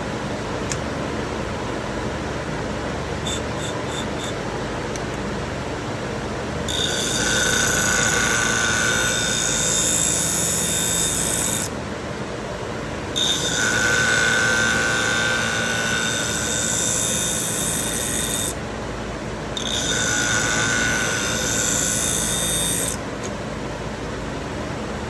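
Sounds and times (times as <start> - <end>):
blade grinding on sharpener wheel: 3.2 - 4.5, 6.7 - 11.8, 13.2 - 18.6, 19.6 - 23.1
sharpener motor humming: 3.2 - 5.2, 6.7 - 11.8, 13.1 - 18.6, 19.6 - 23.4.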